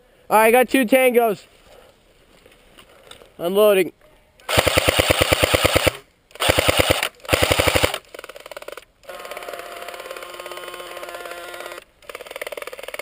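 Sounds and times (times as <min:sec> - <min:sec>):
airsoft gun firing full auto: 0:04.5 - 0:13.0.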